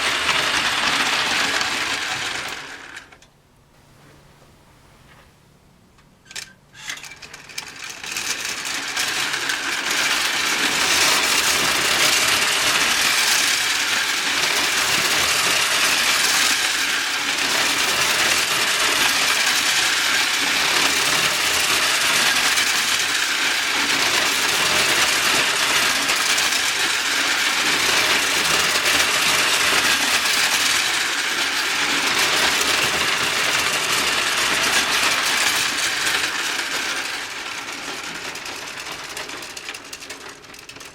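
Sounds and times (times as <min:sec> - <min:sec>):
clockwork motor whirring clatter: 0:00.0 - 0:03.3, 0:06.3 - 0:40.9
toy clicks: 0:06.2 - 0:10.2.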